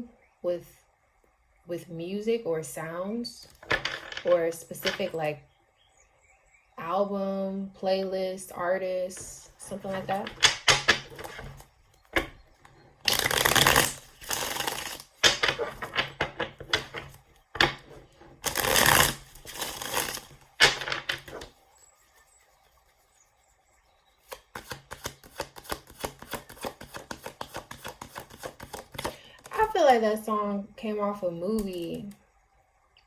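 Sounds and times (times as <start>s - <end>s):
cards being shuffled by hand: 3.4s - 5.2s, 9.2s - 22.6s, 24.2s - 29.8s.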